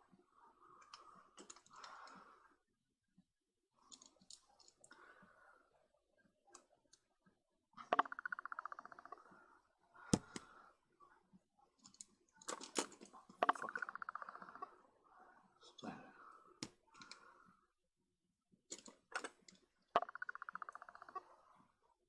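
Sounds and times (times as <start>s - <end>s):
small parts clicks and taps: 0.9s - 2.0s, 3.9s - 4.9s, 10.1s - 10.5s, 11.8s - 13.9s, 18.7s - 21.2s.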